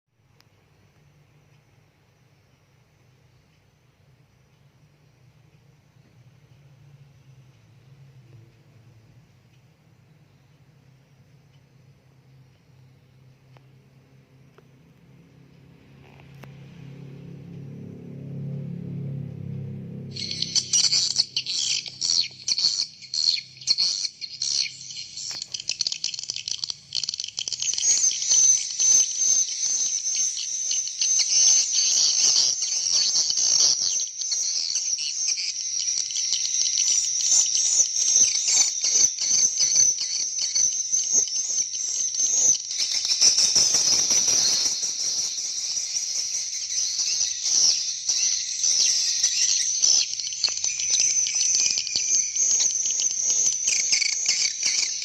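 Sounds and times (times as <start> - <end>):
high twittering bird chirps: 20.1 - 55.0.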